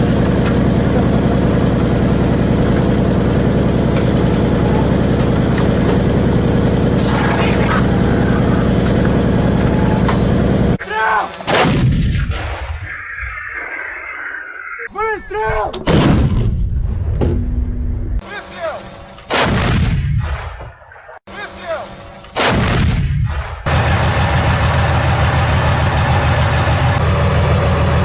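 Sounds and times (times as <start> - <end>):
heavy engine running: 0.0 - 11.4, 18.2 - 19.4, 21.3 - 22.4, 23.6 - 28.0
artillery gun blast: 11.5 - 13.0, 15.8 - 17.2, 19.3 - 20.7, 22.3 - 23.7.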